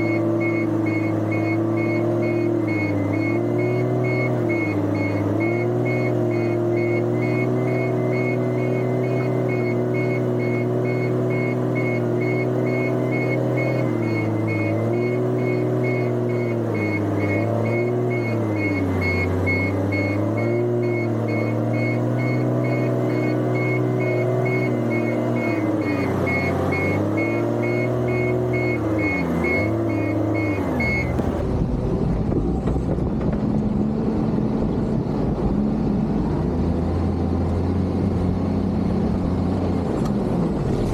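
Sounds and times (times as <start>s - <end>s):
high rapidly pulsing beep: 0.0s - 31.4s
diesel engine working under load: 0.0s - 40.9s.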